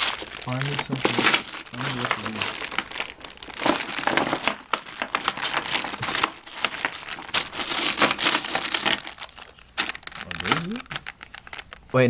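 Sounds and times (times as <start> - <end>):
small metal pieces clinking: 0.0 - 11.8.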